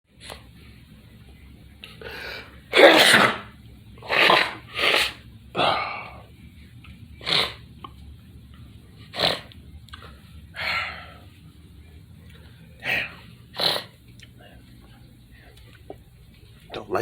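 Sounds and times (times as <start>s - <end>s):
person sneezing: 2.7s - 6.2s.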